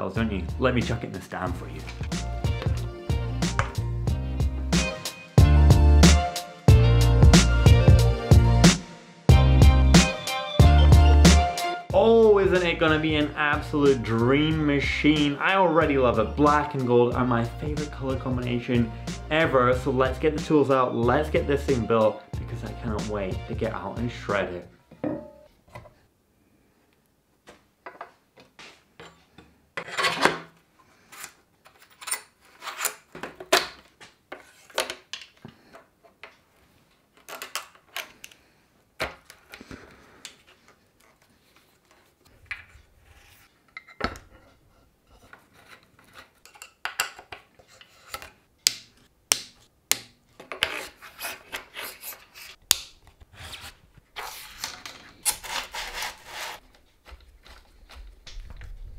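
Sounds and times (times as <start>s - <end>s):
tools clicking and clinking: 46.4s - 47.4s
rubbing: 53.3s - 58.9s.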